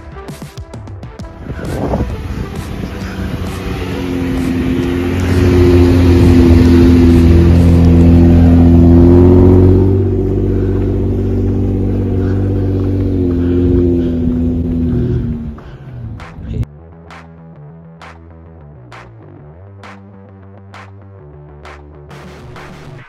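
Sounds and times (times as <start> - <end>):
engine running under load: 1.4 - 16.6.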